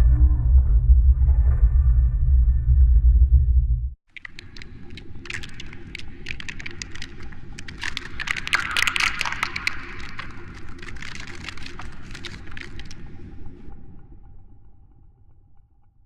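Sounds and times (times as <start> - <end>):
low rumbling: 0.0 - 4.0
crackling and clicking: 4.1 - 13.8.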